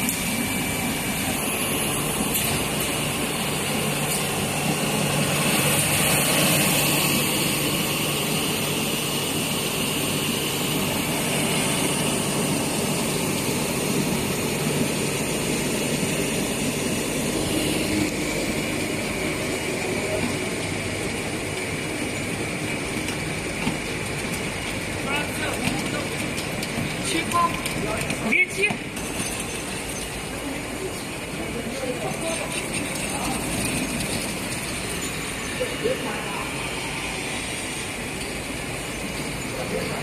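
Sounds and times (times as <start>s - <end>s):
machinery humming with hiss: 0.0s - 40.0s.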